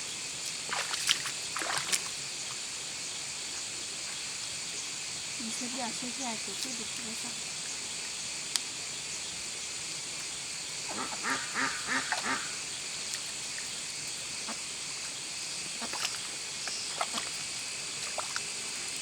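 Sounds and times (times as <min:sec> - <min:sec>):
ducks quacking: 0:10.9 - 0:12.6.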